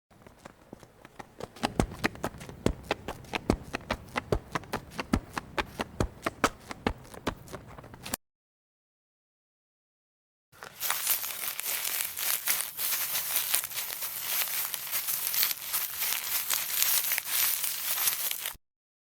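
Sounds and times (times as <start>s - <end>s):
footsteps crunching: 0.2s - 8.2s, 10.6s - 18.6s.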